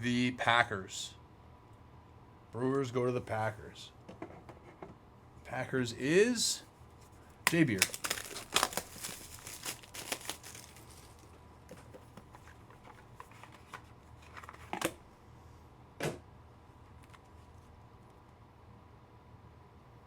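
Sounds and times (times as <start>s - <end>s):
cards rustling and clicking: 7.3s - 15.0s.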